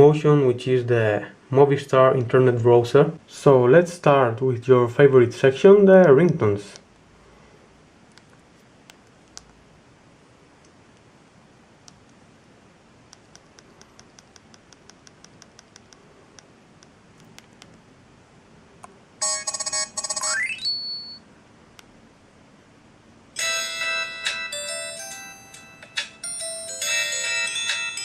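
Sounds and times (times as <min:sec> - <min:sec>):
electronic phone ringtone: 0:19.2 - 0:21.2, 0:23.4 - 0:28.0.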